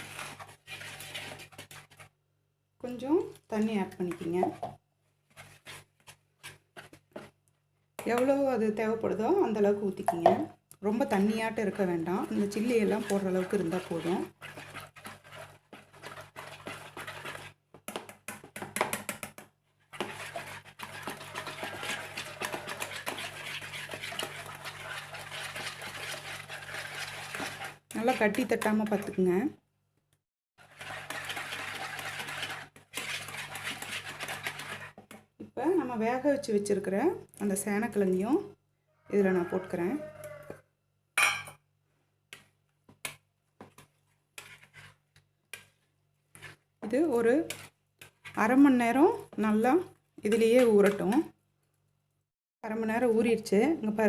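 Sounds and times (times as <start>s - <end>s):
whisk beating batter: 0.0s - 2.2s, 3.2s - 7.4s, 10.8s - 29.4s, 30.6s - 35.4s, 42.3s - 51.4s.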